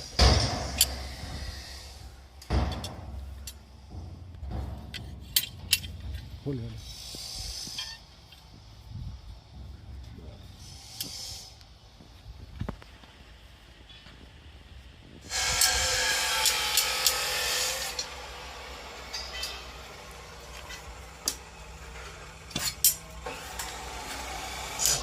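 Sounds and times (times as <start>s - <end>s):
metal scraping: 0.0s - 8.5s, 15.3s - 25.0s.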